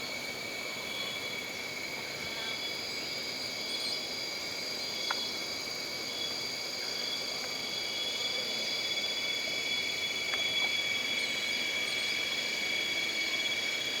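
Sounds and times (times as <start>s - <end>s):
insects trilling: 0.0s - 14.0s.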